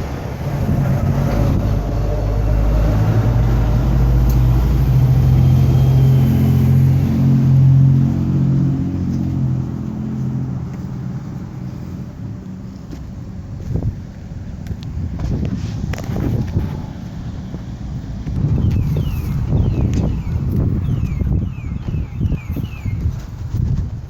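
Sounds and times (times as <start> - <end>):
motor vehicle driving past: 0.0 - 12.2.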